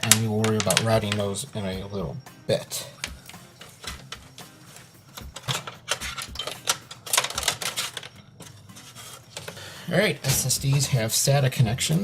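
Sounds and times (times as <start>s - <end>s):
cables and connectors clicking: 0.0s - 1.5s, 3.0s - 8.6s.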